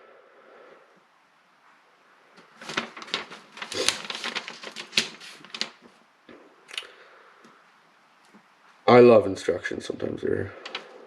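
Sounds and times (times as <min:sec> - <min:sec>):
paper crinkling: 0:02.4 - 0:06.0, 0:10.6 - 0:11.0.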